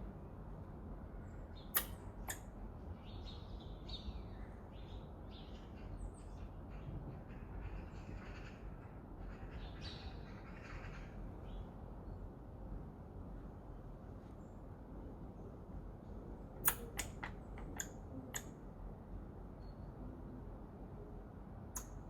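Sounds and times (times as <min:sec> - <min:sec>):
sharp clicks: 0:01.8 - 0:02.4, 0:16.6 - 0:18.5
crows cawing: 0:10.4 - 0:11.2.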